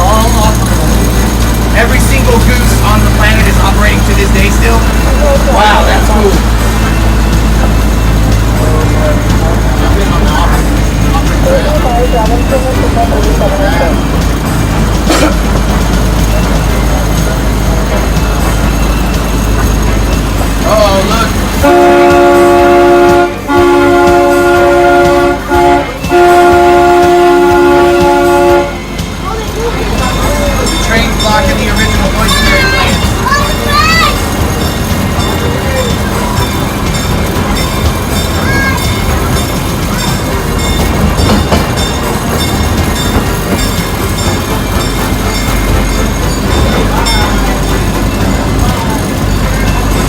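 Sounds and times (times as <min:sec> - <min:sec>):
rail motorcar rumbling on rails: 0:00.0 - 0:50.0
rail motorcar horn chord: 0:21.6 - 0:29.1.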